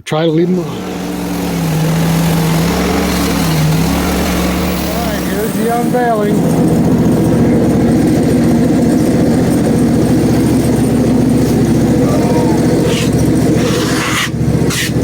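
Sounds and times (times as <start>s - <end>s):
gasoline engine running: 0.0s - 15.0s
scraping noise: 12.8s - 15.0s.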